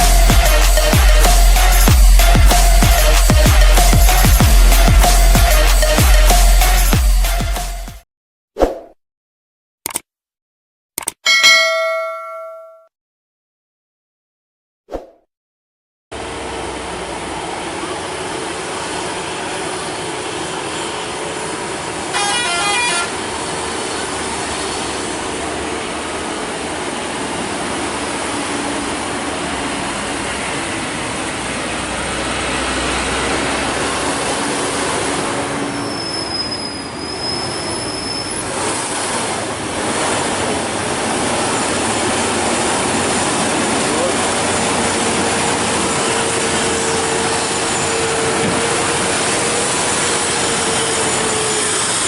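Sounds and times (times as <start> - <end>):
truck horn blast: 0.0 - 7.4, 22.1 - 23.2
heavy truck engines rumbling: 16.2 - 52.0
high steady whistle: 35.7 - 38.5.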